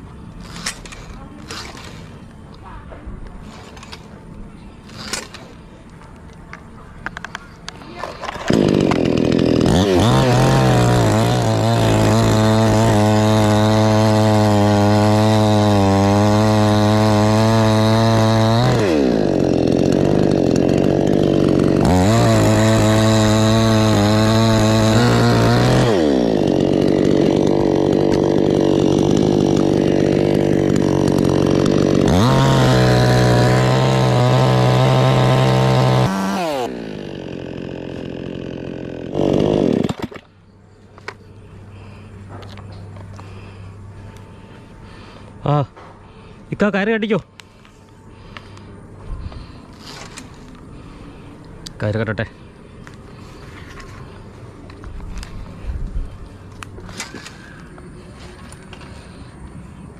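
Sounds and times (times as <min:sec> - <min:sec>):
chainsaw cutting wood: 0:00.4 - 0:02.2, 0:03.4 - 0:04.1, 0:04.9 - 0:05.6, 0:07.8 - 0:40.3.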